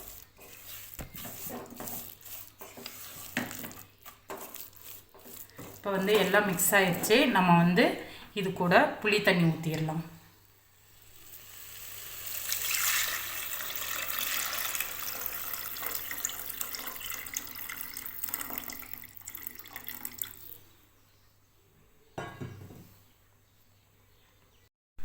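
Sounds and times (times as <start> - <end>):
water pouring and splashing: 12.0 - 20.6.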